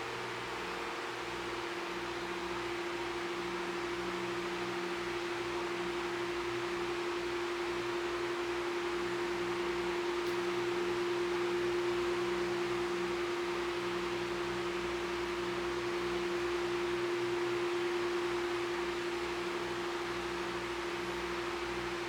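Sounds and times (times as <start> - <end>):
fan motor hum: 0.0 - 22.0.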